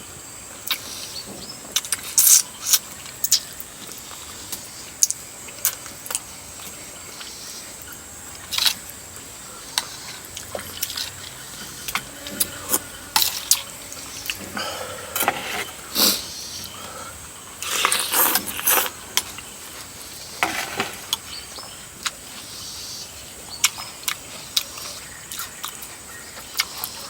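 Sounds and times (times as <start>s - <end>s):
person slurping noodles: 14.4s - 16.3s.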